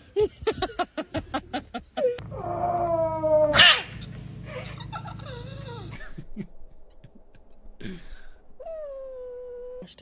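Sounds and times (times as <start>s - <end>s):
dog howling: 2.1s - 4.0s, 8.6s - 9.9s
dog yipping: 3.4s - 4.1s.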